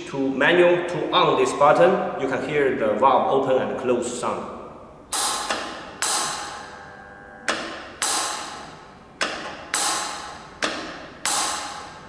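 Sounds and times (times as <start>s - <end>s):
gas valve clicking: 5.1s - 12.0s.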